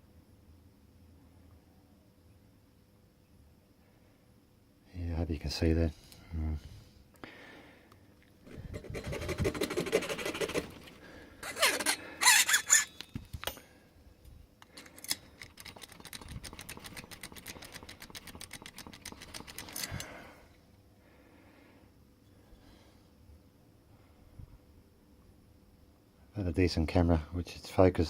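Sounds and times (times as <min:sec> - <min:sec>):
file rasping on metal: 0:08.5 - 0:13.0
metal scraping: 0:08.5 - 0:13.2
sharp metallic clicks: 0:14.6 - 0:20.1.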